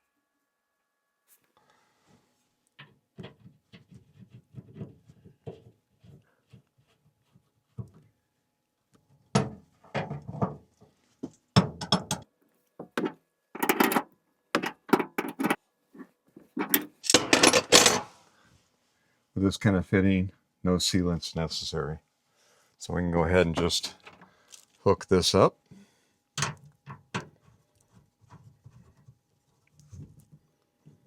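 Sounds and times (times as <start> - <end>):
metal fittings knocking and clinking: 12.8 - 15.6, 16.5 - 18.1, 26.4 - 27.3.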